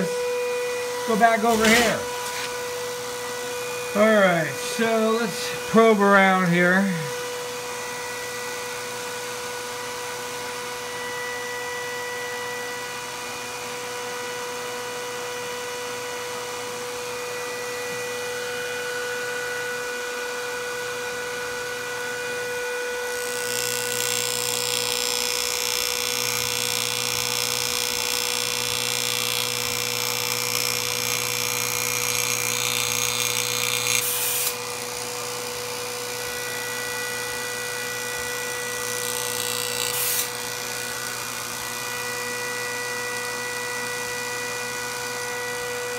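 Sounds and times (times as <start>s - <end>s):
fan motor: 0.0s - 13.7s, 16.0s - 45.9s
high-voltage circuit buzzing: 23.1s - 42.1s
high-voltage sparking crackle: 39.2s - 40.4s.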